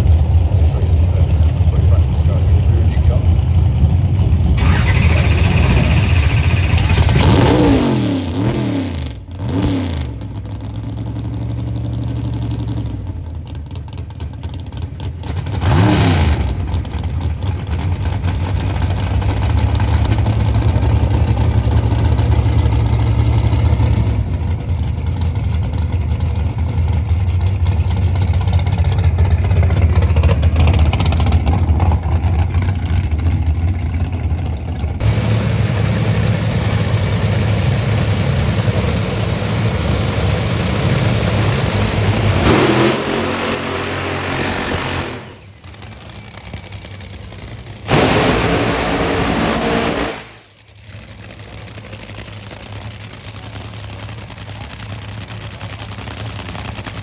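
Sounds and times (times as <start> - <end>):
racing car engine revving: 0.0 - 10.2, 15.2 - 17.8, 35.0 - 46.1, 47.8 - 50.5
low engine drone: 0.0 - 11.4, 18.6 - 57.0.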